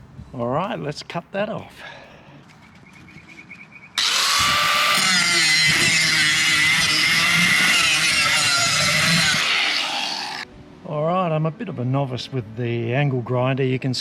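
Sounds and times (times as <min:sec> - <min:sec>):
angle grinder cutting: 0:04.0 - 0:10.4.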